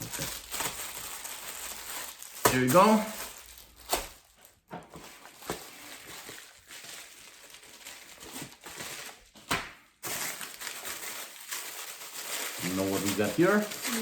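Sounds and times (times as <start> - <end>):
plastic packaging crinkling: 0.0 - 14.0.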